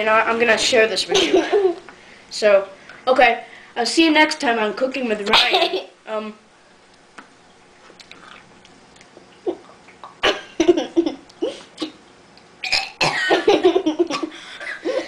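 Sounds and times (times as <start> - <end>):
person clearing throat: 12.6 - 13.5
person coughing: 12.7 - 13.5.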